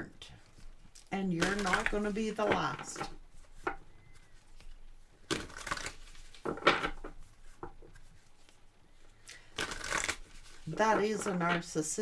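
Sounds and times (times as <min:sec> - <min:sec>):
cards snapping and rustling: 0:00.4 - 0:08.6, 0:09.2 - 0:11.8.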